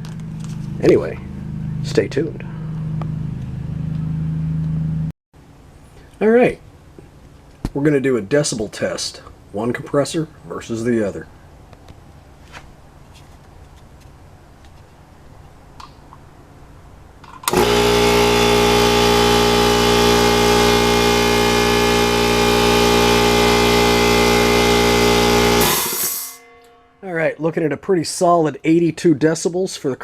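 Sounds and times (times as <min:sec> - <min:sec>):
air compressor running: 0:17.4 - 0:26.4.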